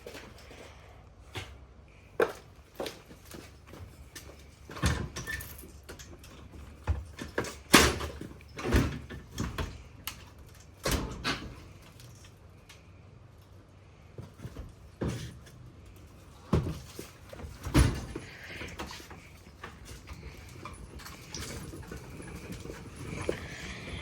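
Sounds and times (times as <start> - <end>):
heavy items knocking and clunking: 1.3 - 12.1, 14.0 - 24.0.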